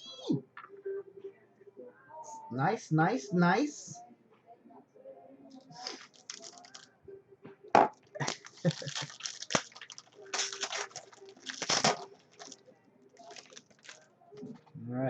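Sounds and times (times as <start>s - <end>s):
card packaging crinkling and rustling: 5.8s - 6.9s, 8.2s - 12.6s, 13.2s - 14.5s.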